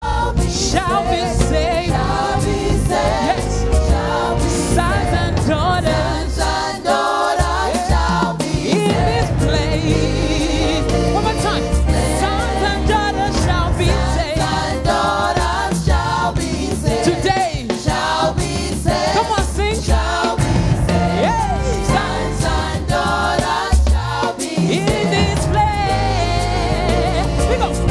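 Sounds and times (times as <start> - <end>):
bass line: 0.0 - 6.8, 8.8 - 17.0, 20.4 - 23.4, 24.9 - 27.9
gospel choir singing: 0.0 - 27.9
drum beat: 0.4 - 27.9.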